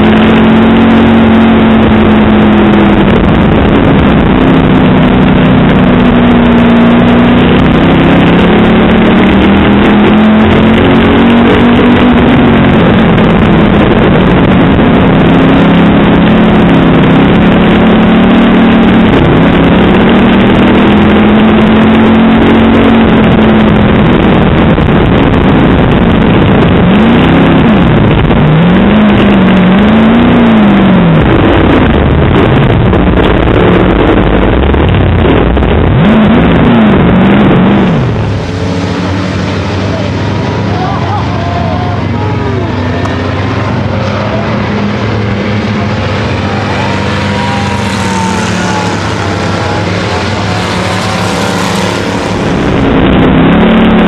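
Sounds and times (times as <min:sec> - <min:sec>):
race car engine at speed: 0:00.0 - 0:54.0.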